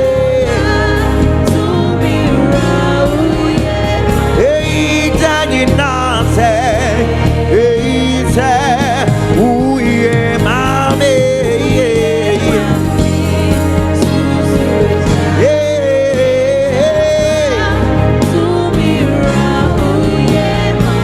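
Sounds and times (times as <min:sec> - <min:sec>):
band playing gospel music: 0:00.0 - 0:21.0.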